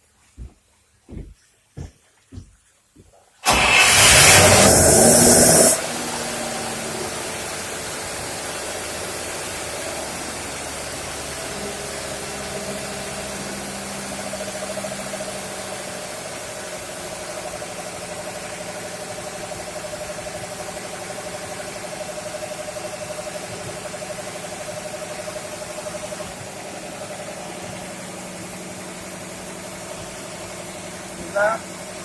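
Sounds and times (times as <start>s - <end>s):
pump engine running: 3.4s - 32.0s.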